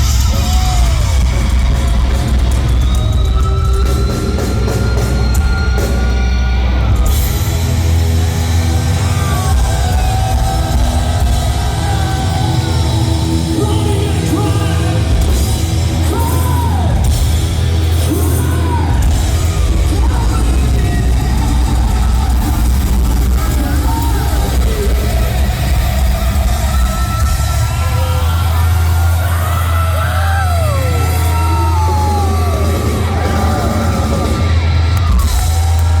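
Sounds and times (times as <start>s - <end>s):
distorted guitars: 0.0s - 36.0s
thrash metal band playing live: 0.0s - 36.0s
yelled vocals: 8.6s - 35.3s.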